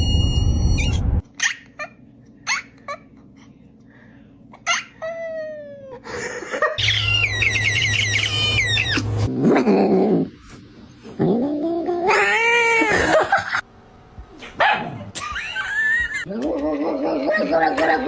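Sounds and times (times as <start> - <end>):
cat chirping and meowing: 6.8 - 9.2.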